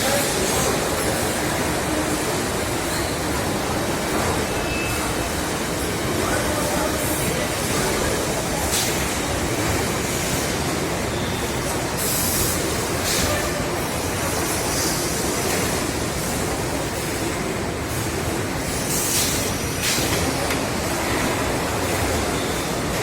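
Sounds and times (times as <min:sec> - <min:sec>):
production line machinery noise: 0:00.0 - 0:23.0.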